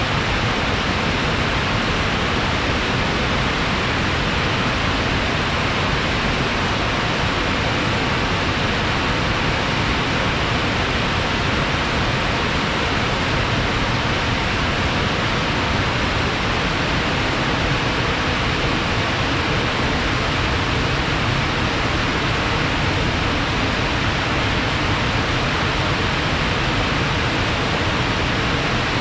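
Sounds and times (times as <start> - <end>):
fast-flowing water rushing: 0.1 - 29.0.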